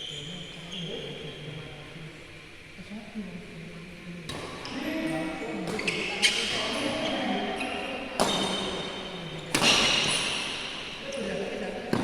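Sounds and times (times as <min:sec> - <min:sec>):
echoing voices: 0:00.0 - 0:12.0
rackets hitting shuttlecock: 0:08.2 - 0:11.0.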